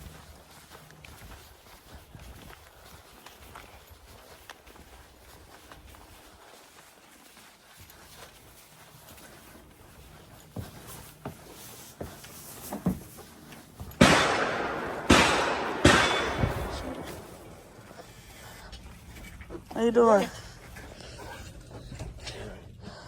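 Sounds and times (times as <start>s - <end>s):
echoing gunshots: 14.0s - 17.9s.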